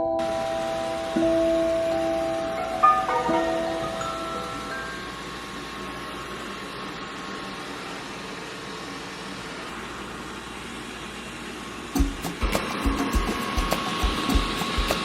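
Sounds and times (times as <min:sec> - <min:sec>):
machine whooshing hum: 0:00.0 - 0:15.0.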